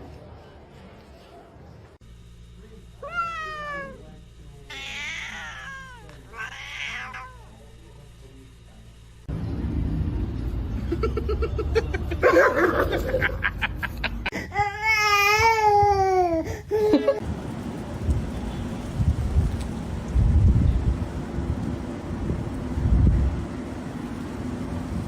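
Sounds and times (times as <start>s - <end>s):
cat meowing: 3.0s - 4.0s, 4.7s - 7.5s.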